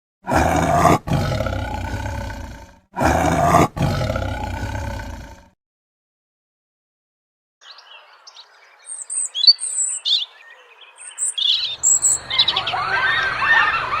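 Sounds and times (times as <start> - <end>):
birds chirping: 7.6 - 14.0.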